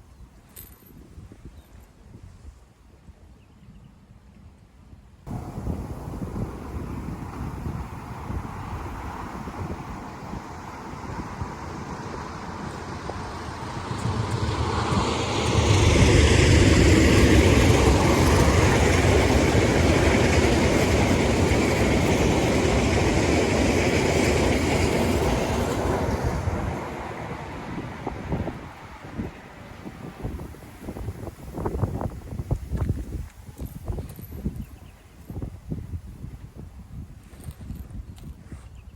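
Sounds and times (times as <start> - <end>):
train passing: 5.3 - 33.3.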